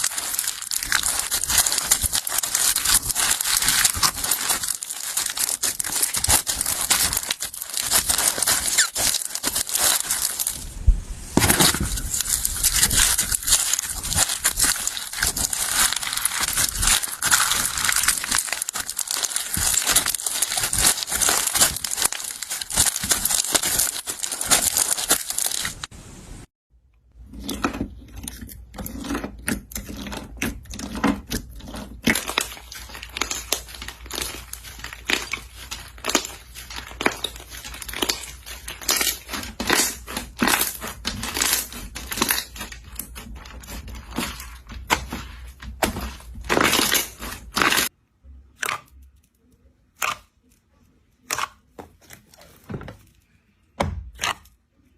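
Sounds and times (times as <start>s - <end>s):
slime crackling when squeezed: 0.0s - 10.6s, 11.4s - 25.9s, 32.0s - 43.0s.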